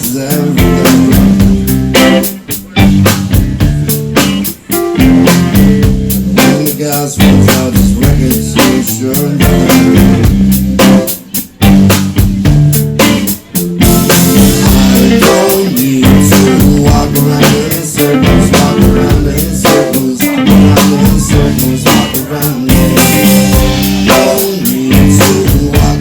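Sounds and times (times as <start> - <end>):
live band playing loudly: 0.0 - 26.0.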